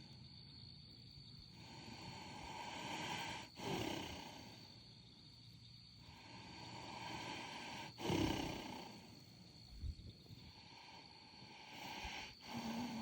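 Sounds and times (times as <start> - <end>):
horse snoring: 1.9 - 4.7, 6.4 - 9.2, 11.5 - 13.0.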